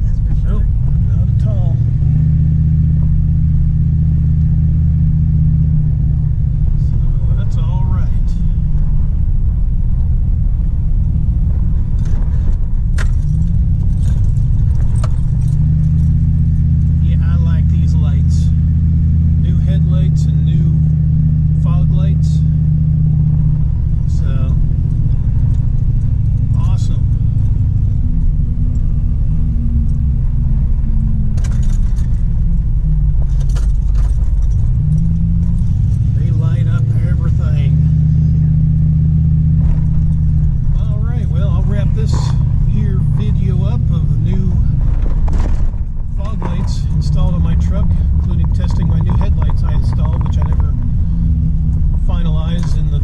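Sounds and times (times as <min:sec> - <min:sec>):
truck engine and road noise: 0:00.0 - 0:53.0
light rattles: 0:11.4 - 0:18.7, 0:23.2 - 0:38.6
light clicks or jingles: 0:13.0 - 0:18.6, 0:31.3 - 0:37.8.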